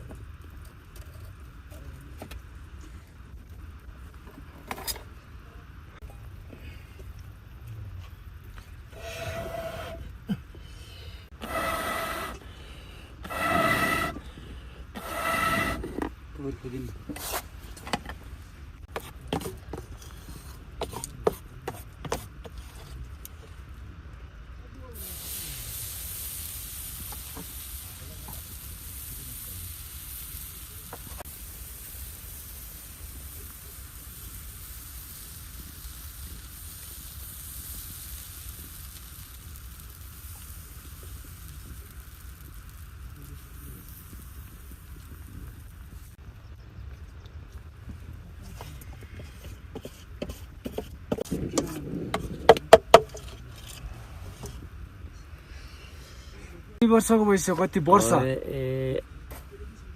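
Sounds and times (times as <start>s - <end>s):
steady rain falling: 24.1s - 46.2s.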